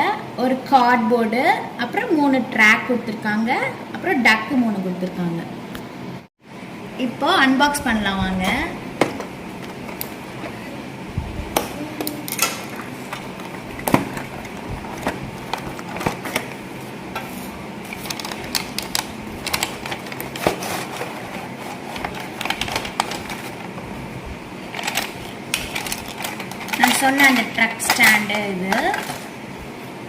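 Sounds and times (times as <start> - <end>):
packaging rustling: 12.7 - 16.7, 17.8 - 23.8, 24.6 - 27.4.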